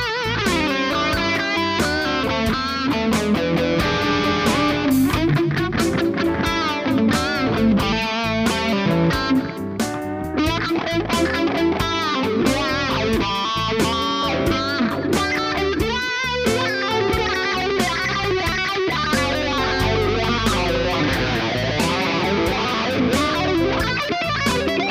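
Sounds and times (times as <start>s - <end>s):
backing drum beat and bass: 0.0s - 24.9s
overdriven electric guitar lead: 0.0s - 24.9s.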